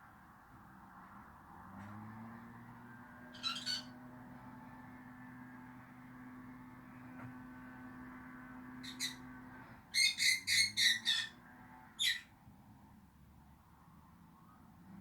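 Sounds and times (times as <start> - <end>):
lovebird chirping: 12.0 - 12.2.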